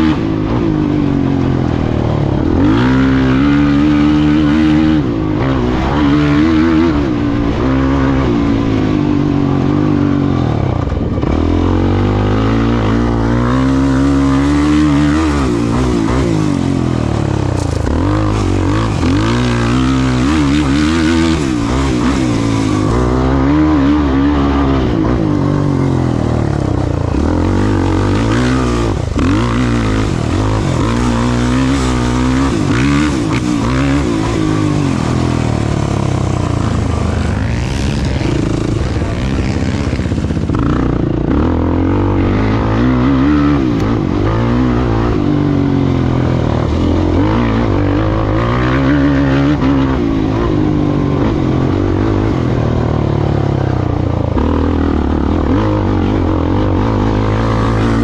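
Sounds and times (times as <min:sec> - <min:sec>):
off-road vehicle engine revving: 0:00.0 - 0:58.0.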